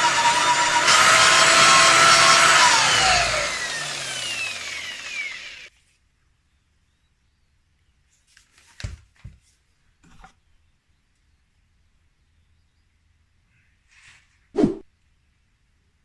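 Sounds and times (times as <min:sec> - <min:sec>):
buffing wheel power tool whine: 0:00.0 - 0:05.7.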